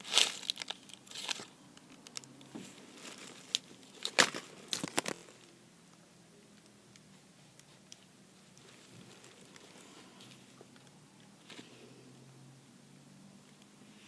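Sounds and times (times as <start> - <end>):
squishy toys rustling and crinkling: 0.0 - 5.6, 8.4 - 10.8.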